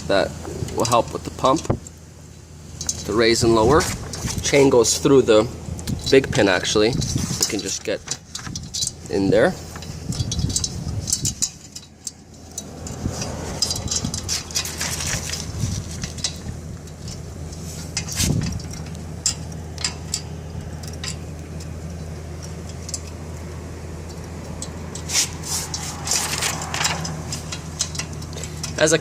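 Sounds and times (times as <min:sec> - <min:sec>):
low steady hum: 0:00.0 - 0:29.0
metal chain clinking: 0:09.7 - 0:29.0.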